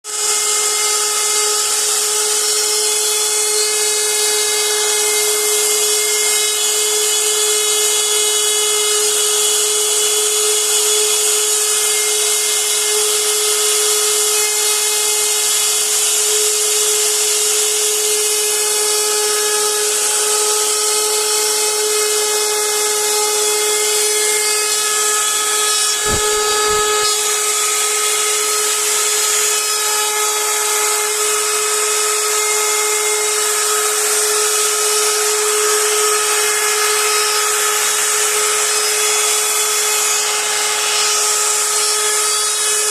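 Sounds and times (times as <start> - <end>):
router spindle whine: 0.1 - 42.9
bit cutting wood hiss: 25.7 - 27.3
low bump: 26.0 - 27.2.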